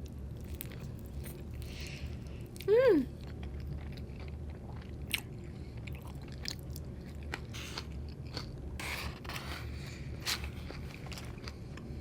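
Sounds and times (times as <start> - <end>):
crunching food: 0.0 - 8.8
person chewing and biting: 0.0 - 8.8.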